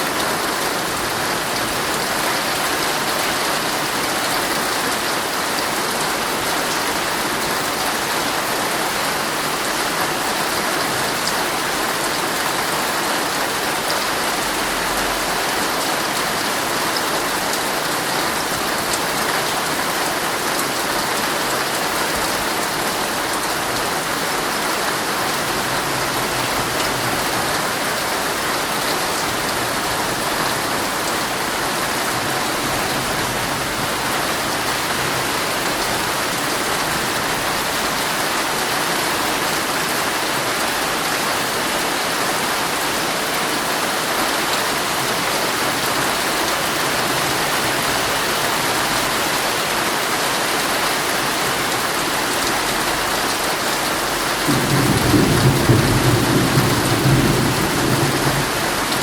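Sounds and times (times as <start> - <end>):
heavy rain on a tent: 0.0 - 59.0.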